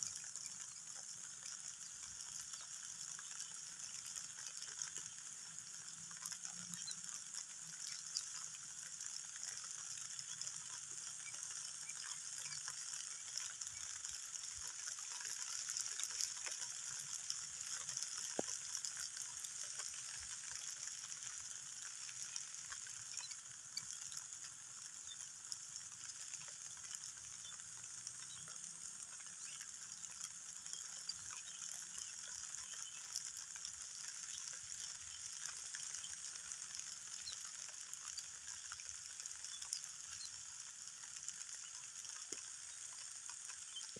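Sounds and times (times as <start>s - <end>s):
rain falling: 0.0s - 43.9s.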